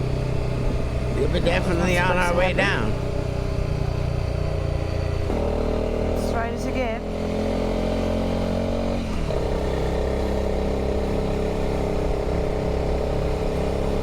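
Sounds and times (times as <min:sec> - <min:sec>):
motorcycle engine running: 0:00.0 - 0:14.0.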